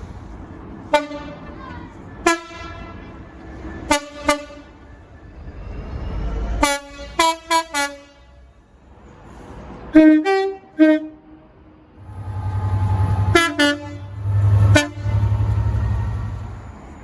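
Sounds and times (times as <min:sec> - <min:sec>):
two-tone train horn toots: 0:02.2 - 0:03.0, 0:03.9 - 0:04.8, 0:06.6 - 0:08.5, 0:09.9 - 0:11.4, 0:12.7 - 0:16.1
low rumble: 0:12.0 - 0:16.7.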